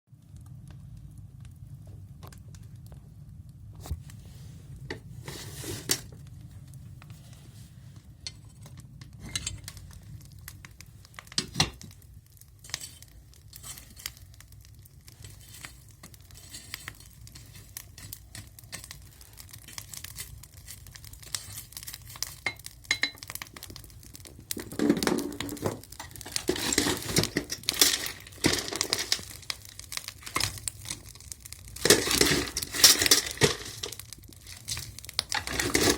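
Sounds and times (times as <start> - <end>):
fire crackles: 0.1 - 35.9
stove draft hum: 0.2 - 35.9
rustling and clattering: 3.8 - 10.0, 15.1 - 35.9.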